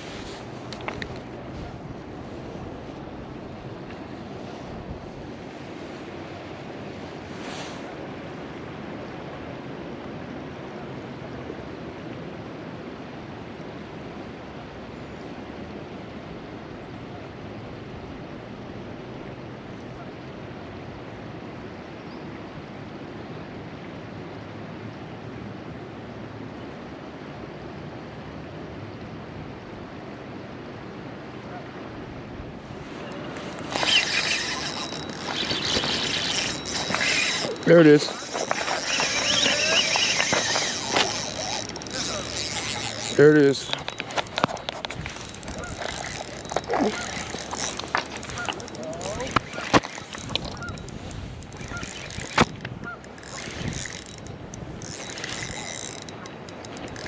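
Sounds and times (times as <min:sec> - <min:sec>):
river water rushing: 0:00.0 - 0:11.0, 0:32.6 - 0:57.0.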